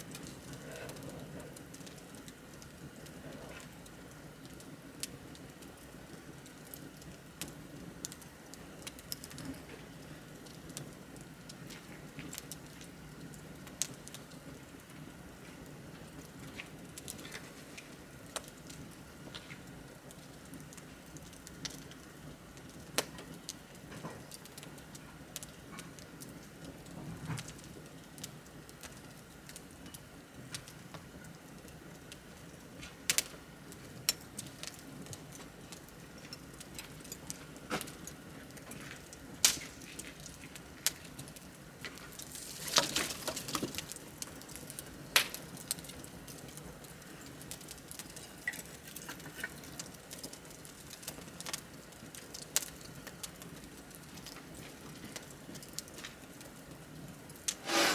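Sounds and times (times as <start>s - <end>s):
bonfire crackling and popping: 0.0s - 57.9s.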